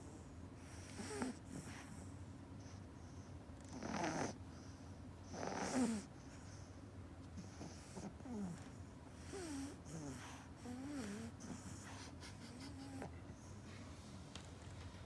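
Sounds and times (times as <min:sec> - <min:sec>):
puppy snoring: 0:00.0 - 0:02.8, 0:03.6 - 0:06.7, 0:07.4 - 0:13.2.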